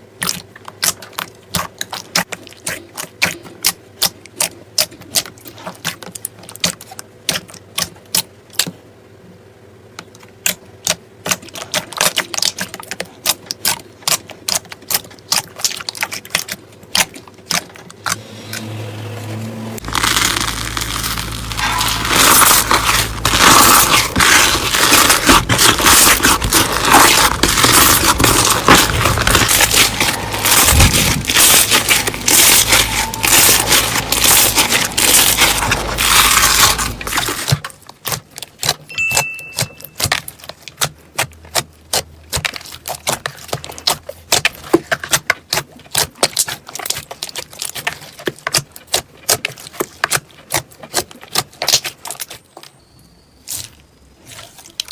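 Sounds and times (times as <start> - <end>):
slime crackling and clicking: 19.8 - 52.4.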